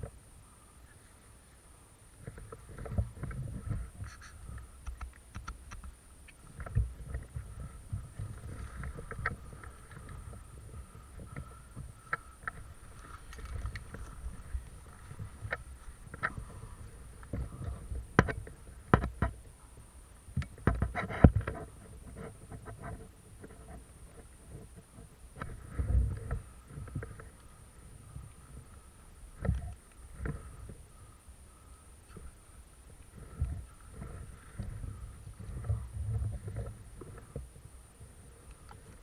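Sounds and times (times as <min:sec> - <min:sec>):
wind rumble: 0:02.0 - 0:39.0
sharp clicks and knocks: 0:02.2 - 0:07.4
microphone handling noise: 0:02.2 - 0:19.5, 0:20.3 - 0:31.1, 0:32.1 - 0:39.0.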